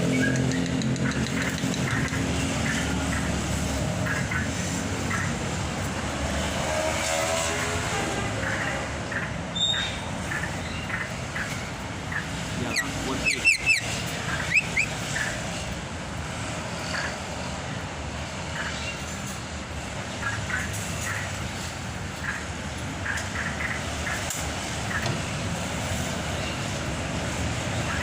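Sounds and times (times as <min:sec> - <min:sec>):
bird chirps: 0:08.4 - 0:15.4.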